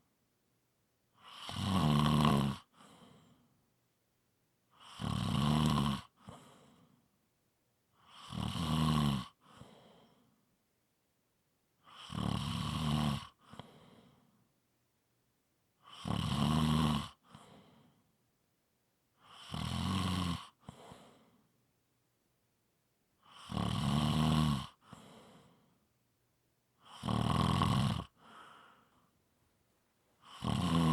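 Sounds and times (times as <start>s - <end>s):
loud low snoring: 1.2s - 2.7s, 4.8s - 6.2s, 8.1s - 9.4s, 11.9s - 13.4s, 15.8s - 17.2s, 19.3s - 20.6s, 23.2s - 24.8s, 26.8s - 28.3s, 30.2s - 30.9s
soft breath: 2.7s - 3.5s, 6.2s - 7.0s, 9.4s - 10.4s, 13.4s - 14.4s, 17.2s - 18.0s, 20.6s - 21.5s, 24.8s - 25.8s, 28.2s - 29.2s.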